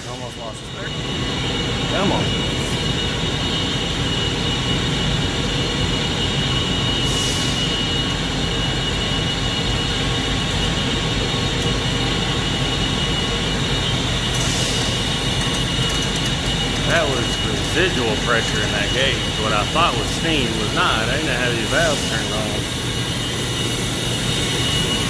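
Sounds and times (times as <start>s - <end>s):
machinery noise: 0.0s - 25.0s
high-pitched tone: 16.8s - 25.0s.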